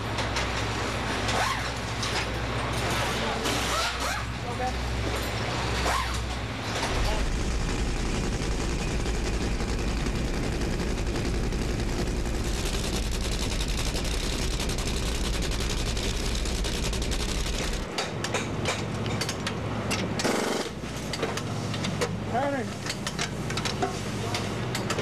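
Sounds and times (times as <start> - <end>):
dragster engines crackling roar: 6.2 - 17.9
engine pops and crackles: 6.7 - 19.4.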